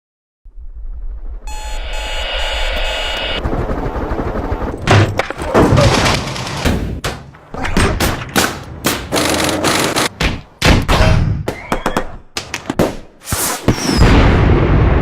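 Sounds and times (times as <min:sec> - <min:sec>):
sharp bangs and low booms: 0:13.7 - 0:15.0.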